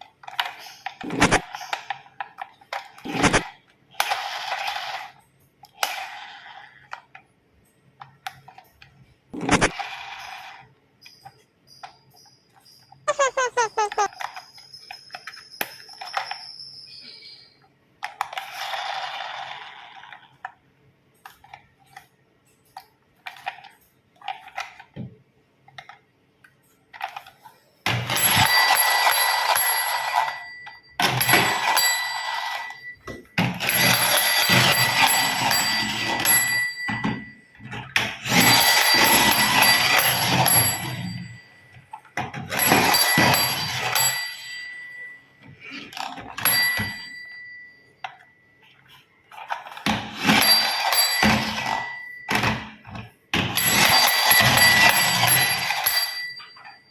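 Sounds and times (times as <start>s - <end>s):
toys clicking and knocking: 0.0s - 16.8s, 18.0s - 47.2s, 48.0s - 56.9s
toy electric bell ringing: 9.8s - 17.0s, 27.9s - 48.6s, 49.3s - 56.9s.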